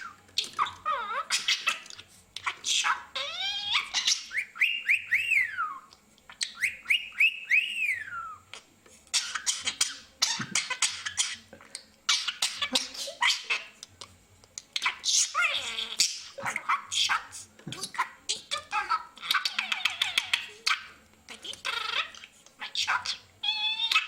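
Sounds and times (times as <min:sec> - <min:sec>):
budgerigar chattering and clicks: 0:17.9 - 0:23.2.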